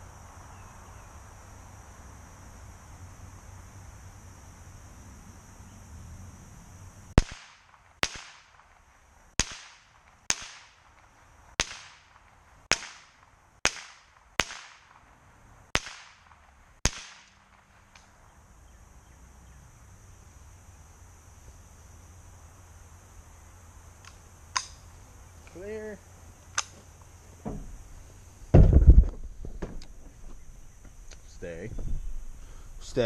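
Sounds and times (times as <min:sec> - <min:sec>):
rifle shots with echo: 0:07.2 - 0:08.7, 0:09.4 - 0:11.0, 0:11.6 - 0:15.0, 0:15.8 - 0:17.7.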